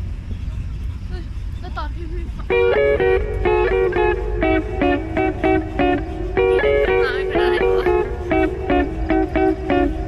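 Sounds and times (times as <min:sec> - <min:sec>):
steady low bass: 0:02.4 - 0:10.0
plucked note melody: 0:02.5 - 0:10.0.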